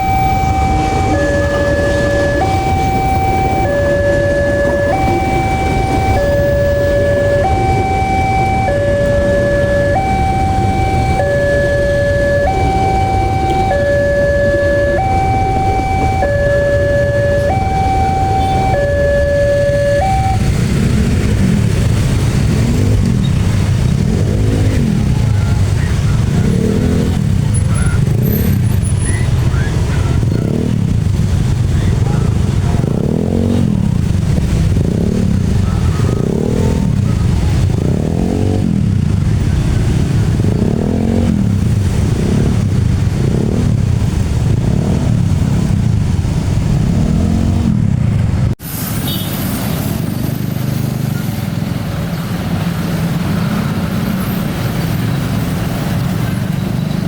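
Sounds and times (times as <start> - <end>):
rising and falling pitched tone: 0.0 - 21.7
road vehicles running: 0.0 - 57.0
traffic noise: 0.0 - 57.0.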